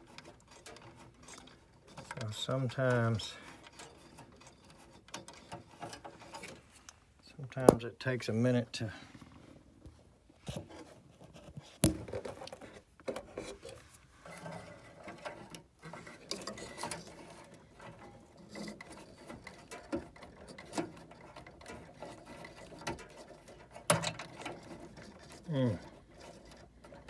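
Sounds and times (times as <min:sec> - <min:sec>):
metal parts clicking and tapping: 0:14.3 - 0:27.0.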